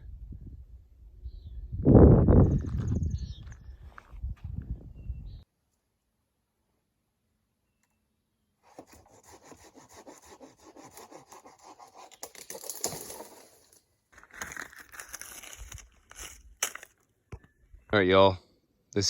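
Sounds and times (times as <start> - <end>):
hand saw cutting wood: 8.6 - 12.4.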